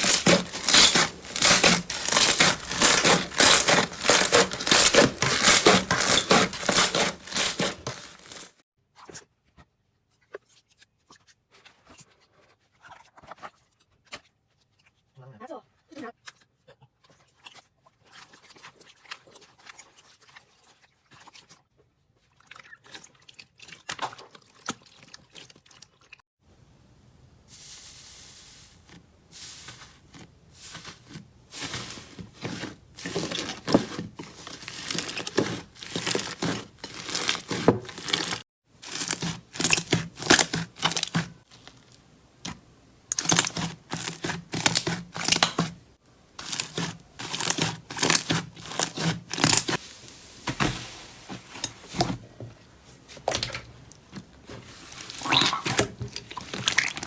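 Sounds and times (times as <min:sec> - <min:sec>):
slime crackling and popping: 0:00.0 - 0:08.5.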